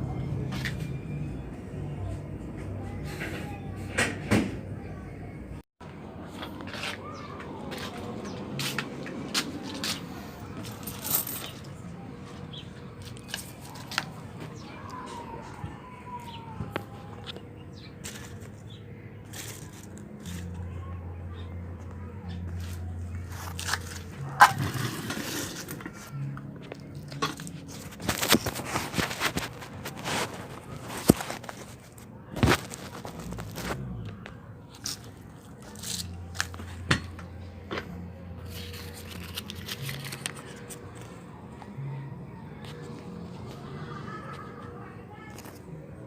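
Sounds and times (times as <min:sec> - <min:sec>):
coins clinking: 0:10.6 - 0:11.7.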